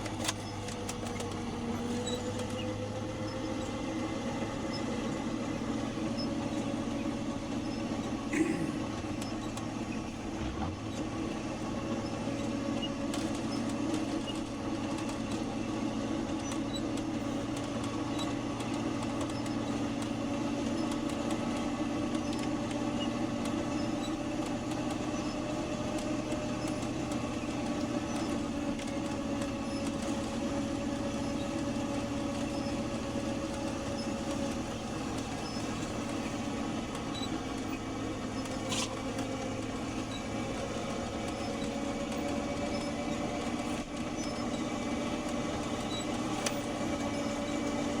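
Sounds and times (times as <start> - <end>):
truck engine humming: 0.0 - 48.0.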